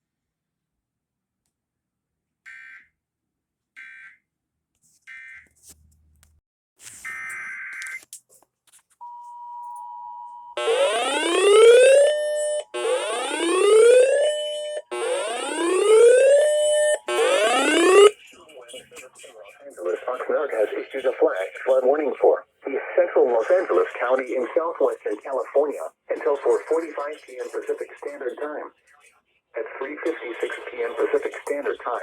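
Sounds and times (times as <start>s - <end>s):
two-tone attention signal: 9.0s - 18.1s.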